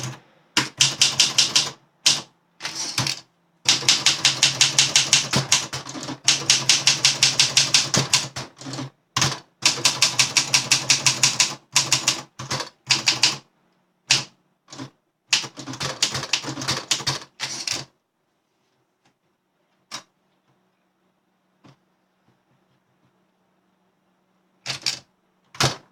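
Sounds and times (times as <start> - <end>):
typewriter key strikes: 24.7 - 25.8.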